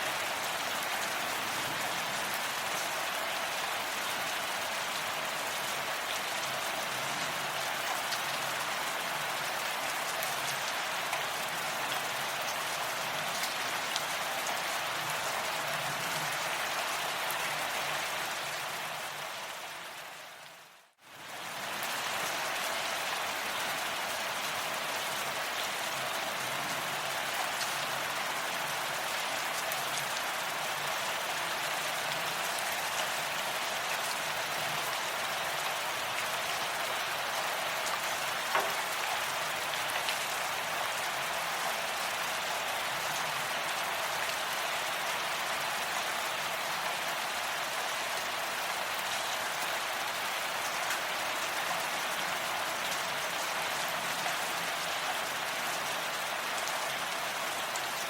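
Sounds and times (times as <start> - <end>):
steady rain: 0.0 - 58.0.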